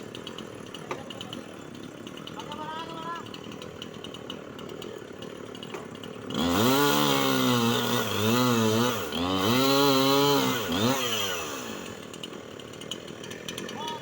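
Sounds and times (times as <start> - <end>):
chainsaw revving: 0.0 - 14.0.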